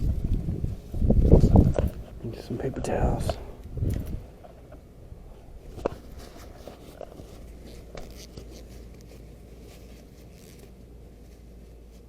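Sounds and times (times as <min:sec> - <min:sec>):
paper towels rustling: 0:05.7 - 0:12.0.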